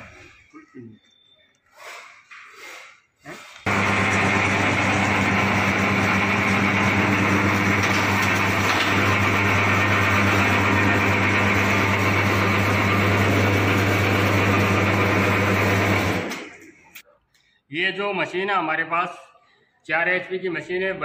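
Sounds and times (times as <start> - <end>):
machine motor humming: 3.7 - 16.4.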